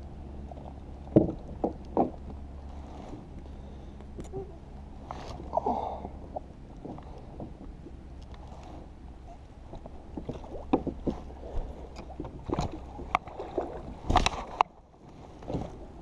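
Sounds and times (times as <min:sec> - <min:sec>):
low steady rumble: 0:00.0 - 0:16.0
gear knocking against kayak hull: 0:10.1 - 0:13.2.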